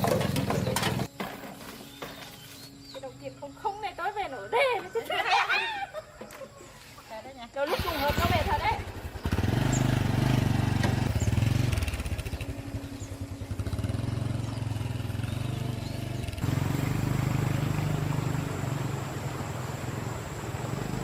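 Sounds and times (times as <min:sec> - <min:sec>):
motorcycle engine running: 0:07.7 - 0:21.0.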